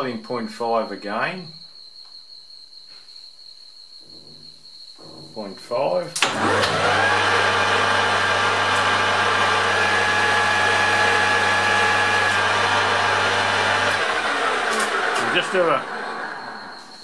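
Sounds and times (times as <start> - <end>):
metal lathe running: 6.2 - 17.0.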